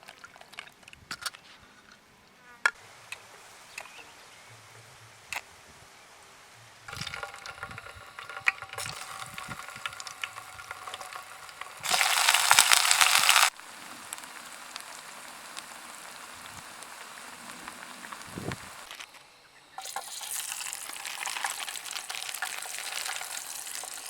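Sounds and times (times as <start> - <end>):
camp stove hissing: 6.5 - 24.0
food frying: 6.8 - 19.2, 19.8 - 24.0.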